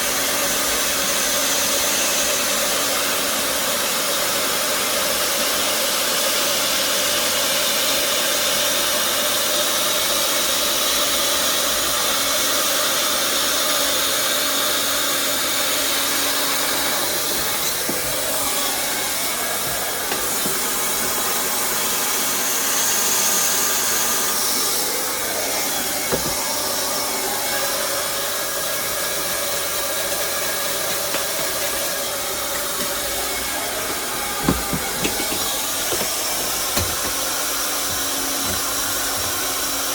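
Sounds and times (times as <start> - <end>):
hot-air welder hissing: 13.2 - 39.9.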